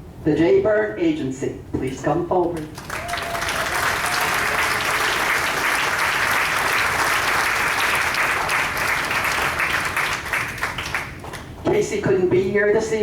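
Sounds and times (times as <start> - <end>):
audience applauding: 2.6 - 11.5.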